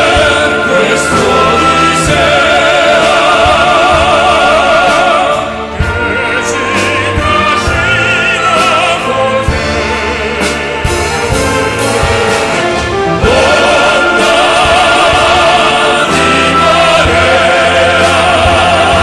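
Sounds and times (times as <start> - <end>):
operatic singing: 0.0 - 19.0
orchestral accompaniment: 0.0 - 19.0.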